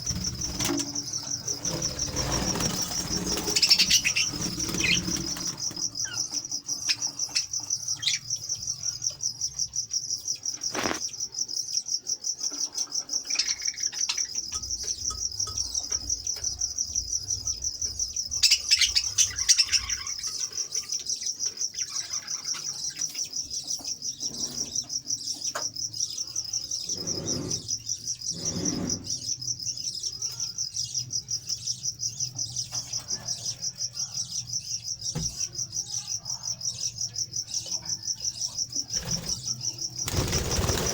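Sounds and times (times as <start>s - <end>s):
fast-pulsing high-pitched chirp: 0.0s - 9.0s, 33.4s - 40.9s
parrots chirping and chattering: 0.0s - 9.6s, 12.2s - 40.9s.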